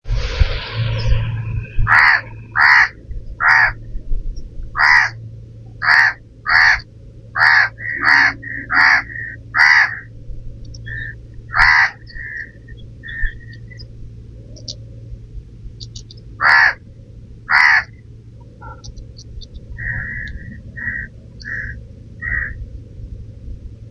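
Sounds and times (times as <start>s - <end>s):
animal harsh loud calls: 1.8s - 3.8s, 4.7s - 5.2s, 5.8s - 10.2s, 10.8s - 13.8s, 15.9s - 16.8s, 17.5s - 18.9s, 19.7s - 22.6s.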